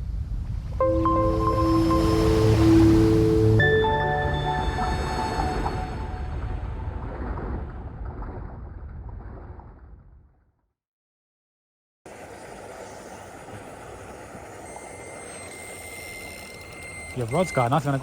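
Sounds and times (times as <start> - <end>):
intro music: 0.8 - 7.0
outdoor background noise: 12.1 - 18.0.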